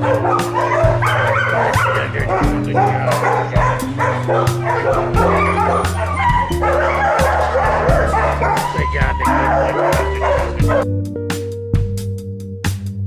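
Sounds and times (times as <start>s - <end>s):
dogs barking and yipping: 0.0s - 10.8s
background music with steady beat: 0.0s - 13.0s.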